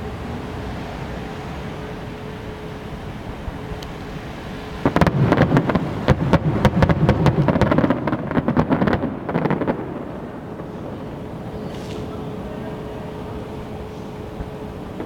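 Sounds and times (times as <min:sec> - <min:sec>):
fireworks bangs and cracks: 0:04.8 - 0:15.0.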